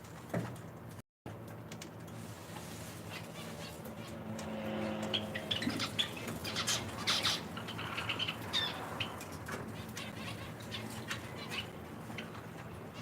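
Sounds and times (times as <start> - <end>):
finches chirping: 5.1 - 13.0.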